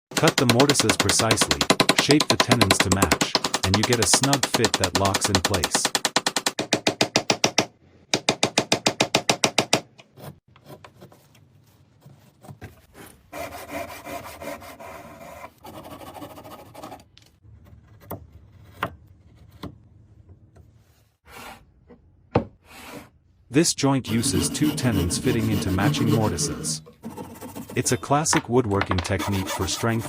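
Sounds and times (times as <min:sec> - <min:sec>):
wood rasping: 0:00.1 - 0:06.6, 0:12.9 - 0:17.0, 0:24.1 - 0:30.0
rapid tool strokes on wood: 0:24.1 - 0:28.0, 0:28.9 - 0:30.0.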